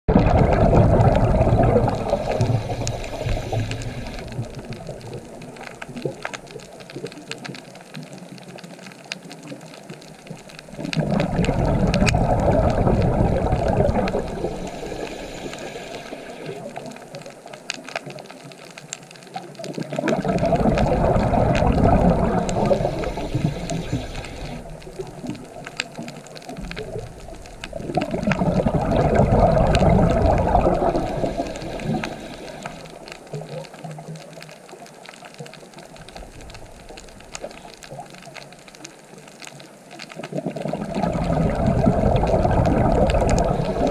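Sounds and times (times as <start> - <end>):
rushing water surging: 0.1 - 5.8, 10.6 - 17.0, 19.8 - 33.5, 40.2 - 43.9
faint ticks: 1.6 - 43.9.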